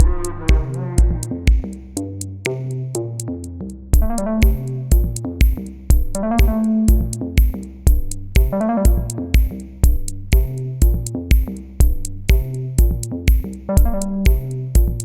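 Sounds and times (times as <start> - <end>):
electronic music: 0.0 - 15.0.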